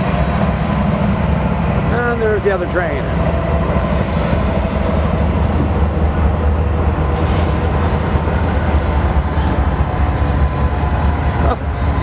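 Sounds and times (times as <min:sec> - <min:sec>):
freight train wheels rumbling: 0:00.0 - 0:12.0.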